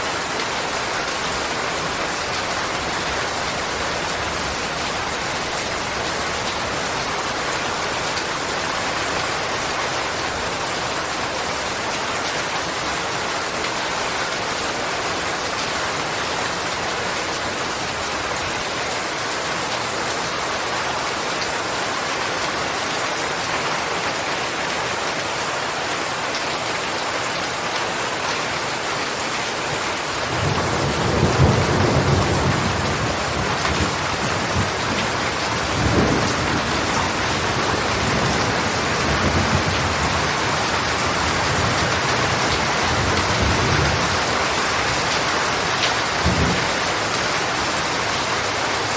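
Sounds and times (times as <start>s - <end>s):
heavy rain hissing: 26.8s - 48.9s.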